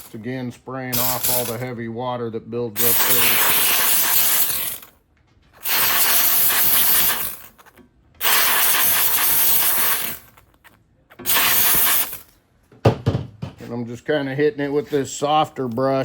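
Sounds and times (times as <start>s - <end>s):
steam cleaner hissing: 1.0s - 1.6s, 2.8s - 4.9s, 5.6s - 10.4s, 11.2s - 12.3s.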